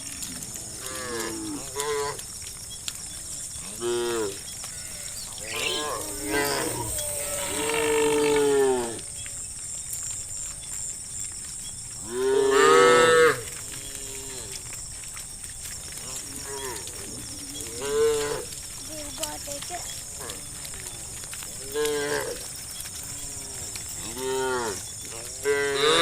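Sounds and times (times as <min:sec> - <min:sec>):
cows mooing: 0:03.6 - 0:09.0, 0:20.2 - 0:26.0.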